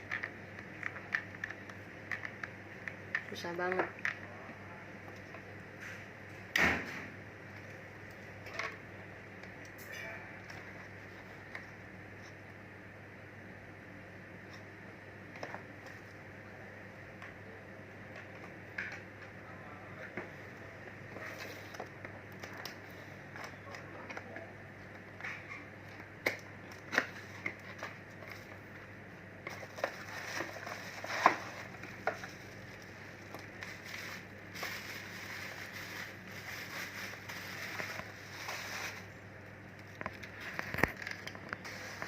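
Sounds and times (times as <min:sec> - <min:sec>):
plastic clicks and crinkling: 0:00.0 - 0:04.3, 0:21.3 - 0:28.7, 0:39.7 - 0:42.0
faint steady hum: 0:00.0 - 0:42.0.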